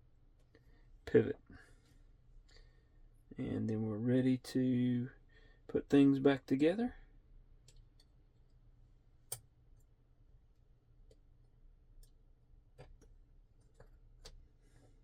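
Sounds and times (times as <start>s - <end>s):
faint clicks of small metal parts: 7.6s - 8.6s, 12.8s - 15.0s.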